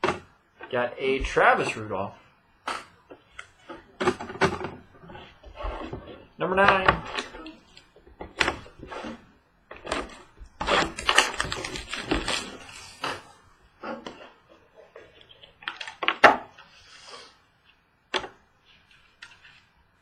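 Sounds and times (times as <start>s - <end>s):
cardboard and wrapper crinkling: 4.2s - 13.4s.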